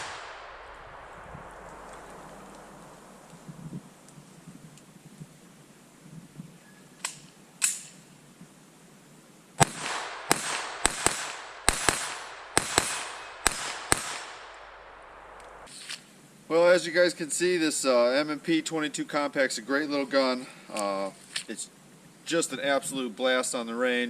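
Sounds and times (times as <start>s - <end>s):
pistol shots: 0.0s - 2.5s, 9.6s - 15.7s.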